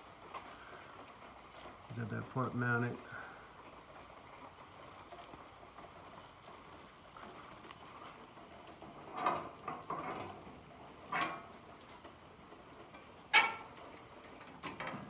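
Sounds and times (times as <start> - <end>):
metal tool box clanks and rattles: 9.0 - 11.6, 13.3 - 15.0.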